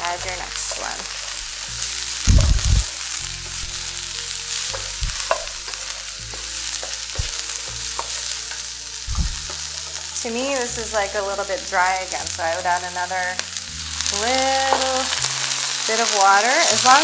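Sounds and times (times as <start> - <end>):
vegetables sizzling in a pan: 0.0 - 17.0
utensil tapping on pan: 4.7 - 10.0, 14.7 - 15.0.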